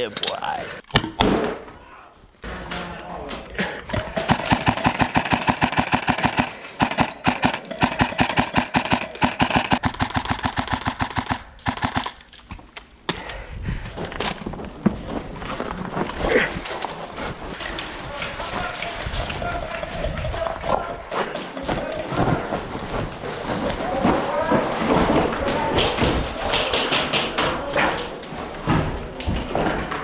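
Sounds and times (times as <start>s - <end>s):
airsoft gun firing bursts: 4.2s - 12.2s.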